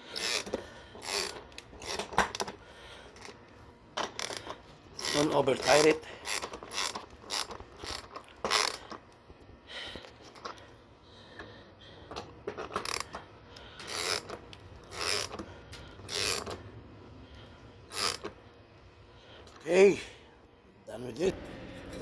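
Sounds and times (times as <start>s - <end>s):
ratchet wrench clicking: 0.0s - 3.4s, 4.1s - 9.0s, 12.7s - 13.2s, 13.8s - 16.6s, 17.9s - 18.4s.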